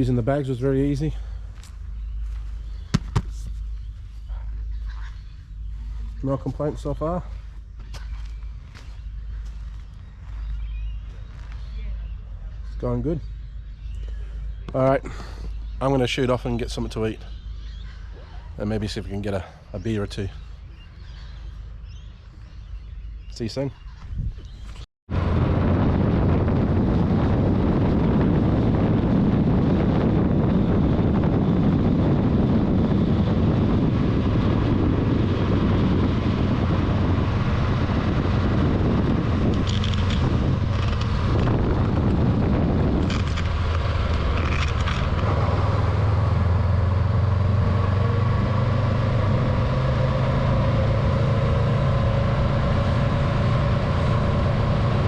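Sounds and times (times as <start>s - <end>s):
wind noise on microphone: 20.3s - 55.0s.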